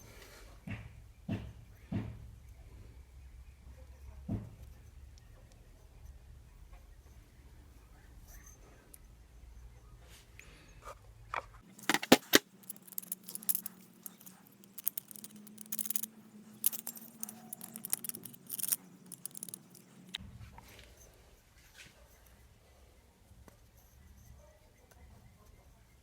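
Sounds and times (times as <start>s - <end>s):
metal tools clinking and rattling: 11.8s - 20.2s.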